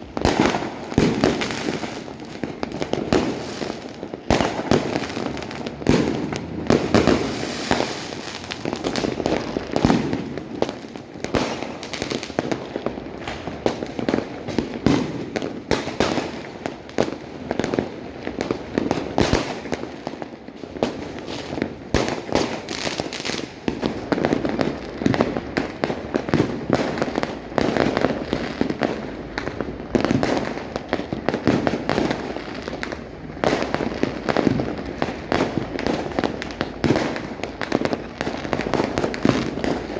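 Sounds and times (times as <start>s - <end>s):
firecracker crackle: 0.0s - 39.9s
fireworks bangs and pops: 0.0s - 39.9s.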